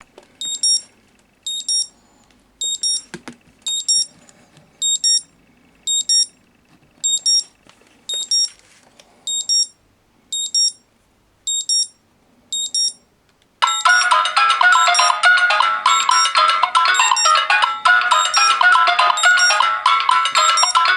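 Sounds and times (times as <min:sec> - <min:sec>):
melodic phone ringtone: 0:13.6 - 0:20.9.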